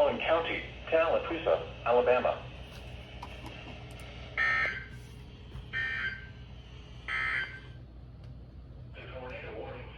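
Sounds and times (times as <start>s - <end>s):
low steady radio hum: 0.0s - 9.9s.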